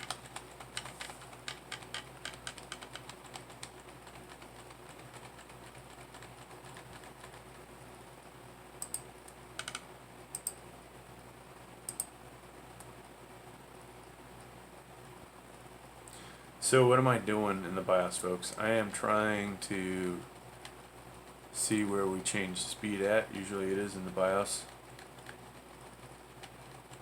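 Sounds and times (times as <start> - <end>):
computer keyboard keystrokes: 0.0 - 7.5, 8.8 - 10.6, 11.9 - 12.1, 24.7 - 25.4, 26.4 - 27.0.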